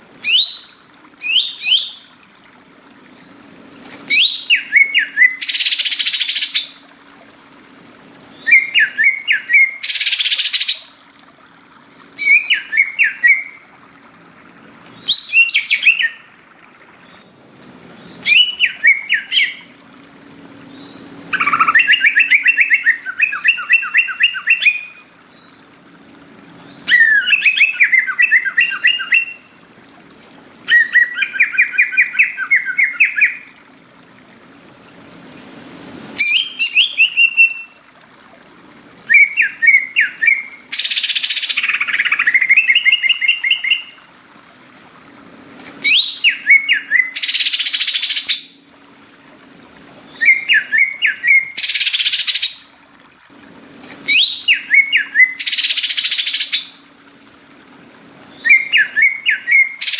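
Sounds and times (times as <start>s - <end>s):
bird singing trilled phrases: 0.2s - 2.2s, 4.1s - 6.9s, 7.8s - 11.0s, 12.2s - 13.7s, 14.9s - 17.4s, 18.0s - 19.8s, 20.6s - 25.7s, 26.6s - 29.6s, 30.6s - 33.6s, 36.2s - 37.8s, 39.0s - 44.1s, 45.8s - 48.6s, 50.1s - 52.8s, 54.0s - 56.9s, 58.3s - 59.9s.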